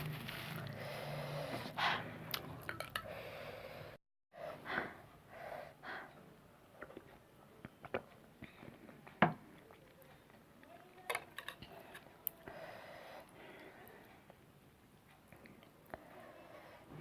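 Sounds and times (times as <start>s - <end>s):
person breathing hard: 0.6s - 2.2s, 3.0s - 6.2s, 12.4s - 14.2s.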